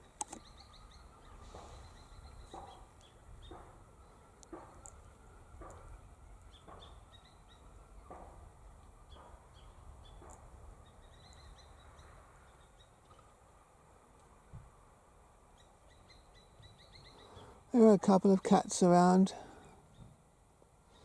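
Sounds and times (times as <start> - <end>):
small birds chirping: 0.0 - 13.4, 15.5 - 17.7.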